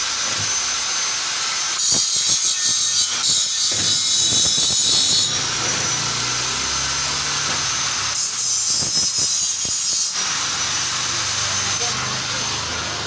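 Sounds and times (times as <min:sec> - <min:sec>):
welding hiss and crackle: 0:00.0 - 0:13.0.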